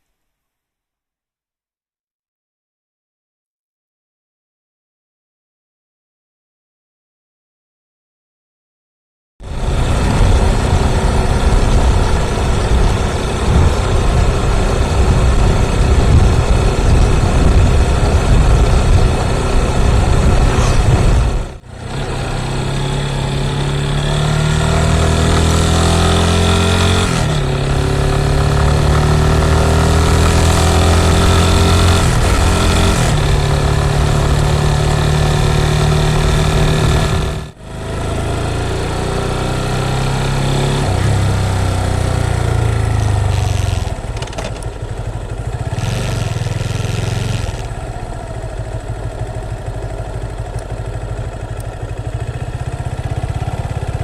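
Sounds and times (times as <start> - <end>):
motorcycle engine running: 9.4 - 54.0
steady rushing noise: 9.5 - 22.0.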